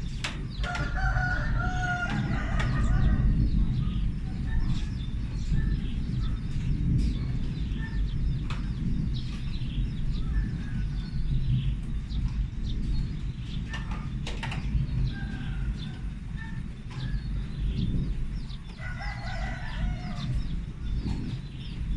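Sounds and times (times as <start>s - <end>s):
low rumble: 0.0s - 21.9s
small birds chirping: 0.0s - 21.9s
rooster crowing: 0.6s - 3.5s, 15.1s - 16.6s, 18.7s - 20.6s.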